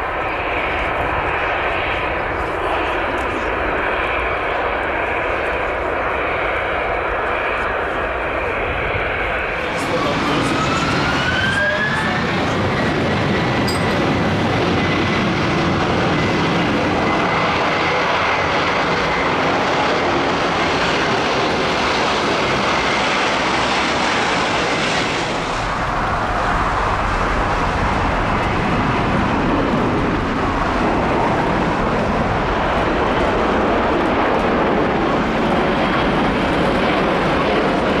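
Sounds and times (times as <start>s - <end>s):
high engine whine: 0.0s - 38.0s
jet engines running: 0.0s - 38.0s.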